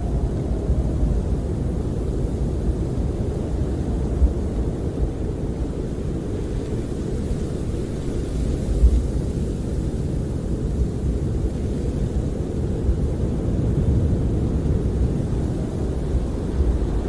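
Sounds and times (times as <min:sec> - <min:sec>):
muffled wind buffeting a camper: 0:00.0 - 0:17.0.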